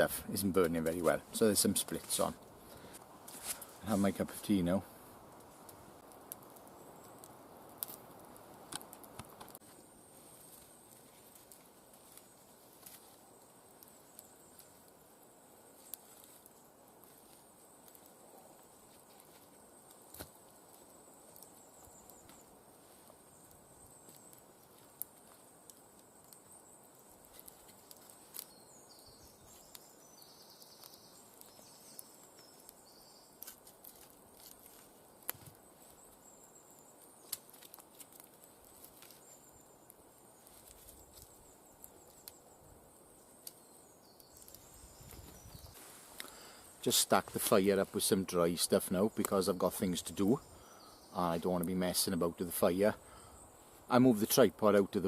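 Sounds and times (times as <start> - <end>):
campfire crackling and popping: 0.0 - 55.0
faint steady hiss: 0.0 - 55.0.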